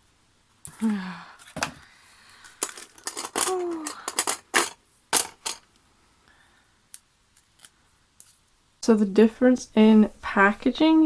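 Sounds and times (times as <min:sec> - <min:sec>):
magnets clicking and clattering: 0:02.3 - 0:05.8.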